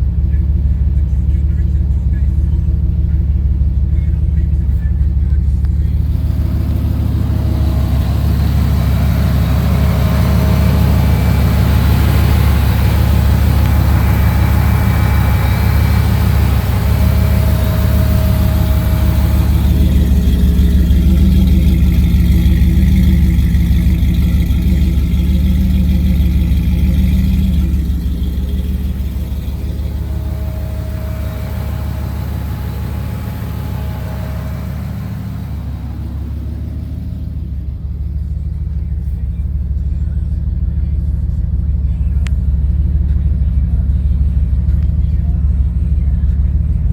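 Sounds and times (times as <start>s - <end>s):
car engine idling: 0.0s - 46.9s.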